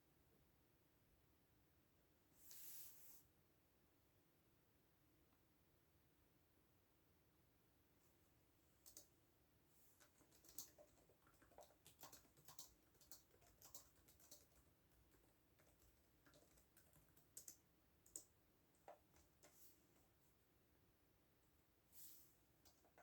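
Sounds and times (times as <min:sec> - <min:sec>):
faint keyboard typing: 0:08.6 - 0:09.2, 0:09.8 - 0:20.1, 0:22.6 - 0:23.0.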